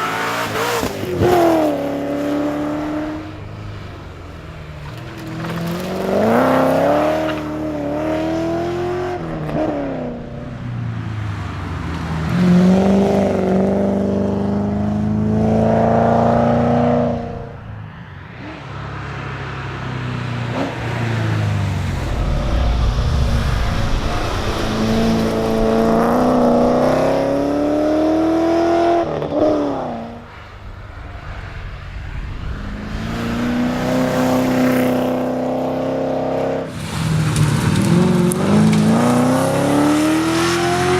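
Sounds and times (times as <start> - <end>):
car engine revving hard: 37.8 - 40.9.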